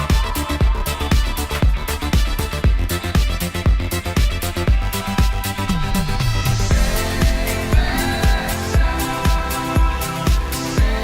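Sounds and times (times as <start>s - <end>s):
electronic dance music: 0.0s - 11.0s
rising sweep: 0.0s - 11.0s.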